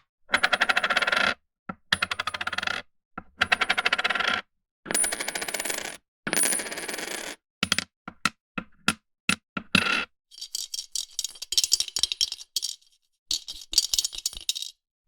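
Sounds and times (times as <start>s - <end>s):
coins rattling and jingling: 10.3s - 14.8s
coins tapped down: 10.4s - 14.8s.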